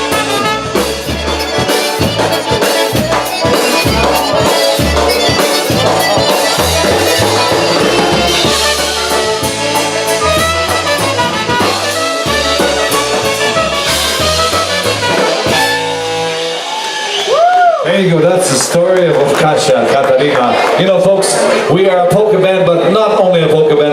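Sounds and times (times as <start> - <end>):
polka band playing: 0.0 - 17.3.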